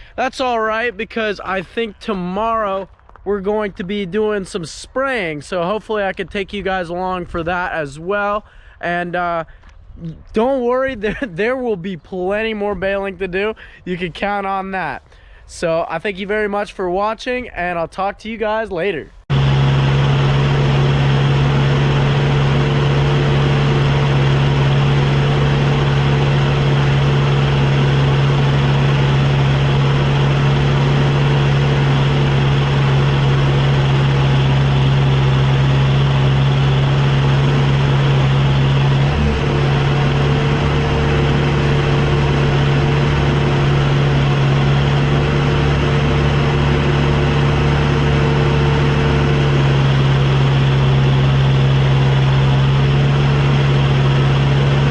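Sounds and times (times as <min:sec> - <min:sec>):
engine running steadily: 0:00.0 - 0:07.8, 0:19.3 - 0:54.9.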